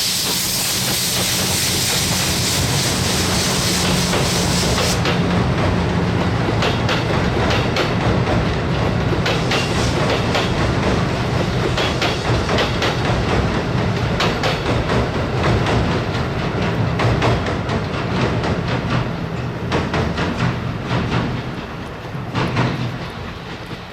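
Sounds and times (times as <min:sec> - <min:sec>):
train wheels clacking: 0:00.0 - 0:23.9
rolling rumble: 0:13.0 - 0:23.9.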